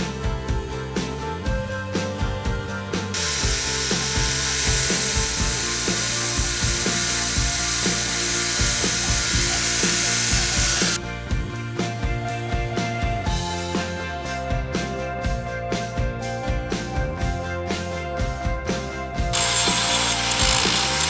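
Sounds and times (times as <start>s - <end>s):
power tool working wood: 3.2s - 11.0s, 19.3s - 21.0s.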